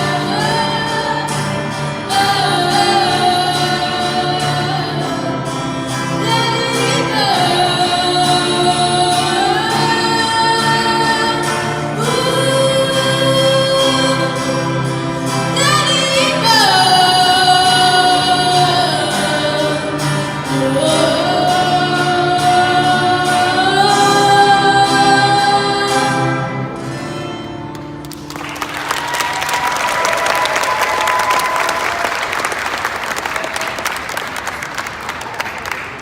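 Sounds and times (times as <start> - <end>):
person singing with accompaniment: 0.0 - 27.4
audience applause: 28.0 - 36.0.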